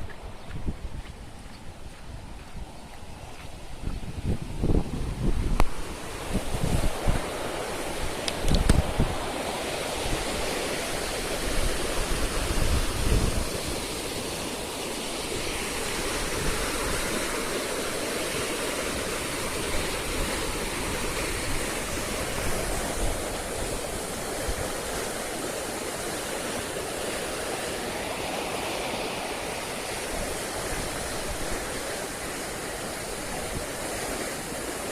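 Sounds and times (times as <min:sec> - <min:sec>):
wind buffeting microphone: 0:00.0 - 0:27.1
flood water roaring: 0:00.0 - 0:34.9.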